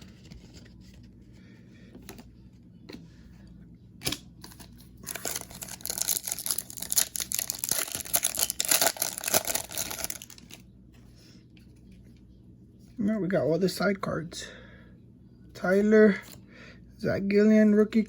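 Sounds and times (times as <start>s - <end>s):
plastic wrapper tearing and crinkling: 4.4s - 10.6s.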